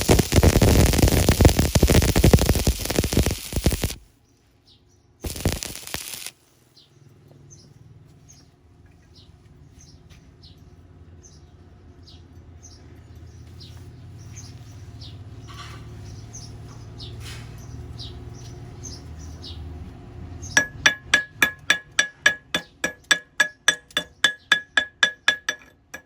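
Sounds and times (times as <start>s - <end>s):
welding arc crackling: 0.0s - 4.1s, 5.2s - 6.5s
small birds chirping: 0.0s - 20.6s.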